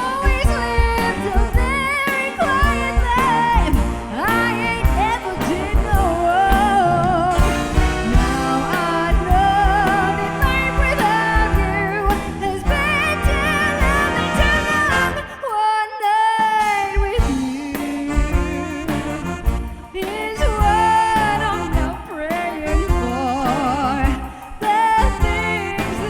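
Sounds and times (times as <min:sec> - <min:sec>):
band with steady drum beat: 0:00.0 - 0:26.0
woman singing with vibrato: 0:00.0 - 0:26.0.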